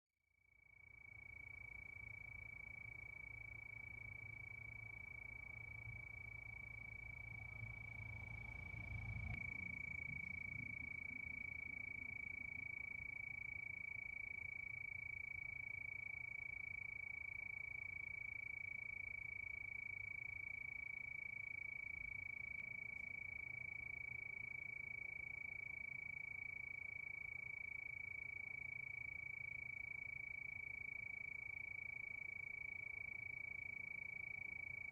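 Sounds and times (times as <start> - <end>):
crickets trilling: 0.8 - 34.9
faint low rumble: 1.9 - 14.8.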